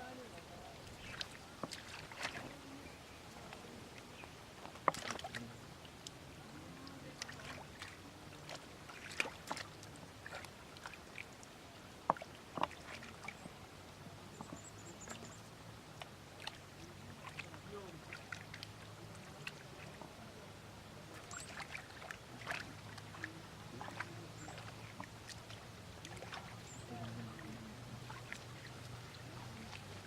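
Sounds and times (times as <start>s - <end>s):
small splashes in water: 0.0s - 13.6s, 14.2s - 30.0s.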